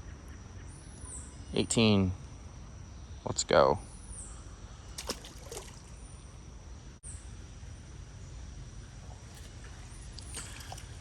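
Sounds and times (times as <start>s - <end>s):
creek water running: 4.9s - 6.0s, 9.1s - 11.0s.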